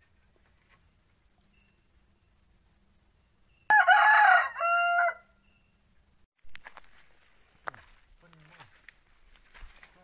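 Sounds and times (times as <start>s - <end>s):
rooster crowing: 3.7s - 5.4s.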